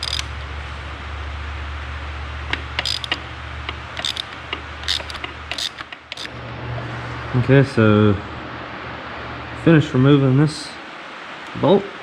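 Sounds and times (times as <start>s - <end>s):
ratchet clicks: 0.0s - 0.3s, 2.5s - 6.3s
low hum: 0.0s - 11.5s.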